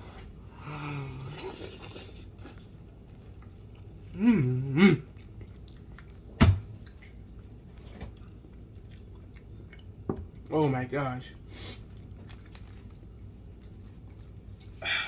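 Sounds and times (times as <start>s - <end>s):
person humming mm-mm: 0.6s - 2.3s, 4.1s - 5.2s
person chewing crunchy food: 0.8s - 10.5s, 11.6s - 14.8s.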